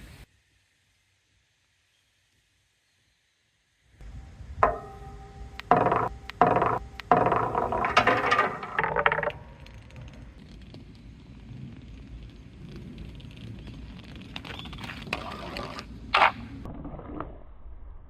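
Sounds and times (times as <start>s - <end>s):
ringing clank: 4.5s - 9.6s
balls rattling through plastic hose: 5.7s - 10.8s.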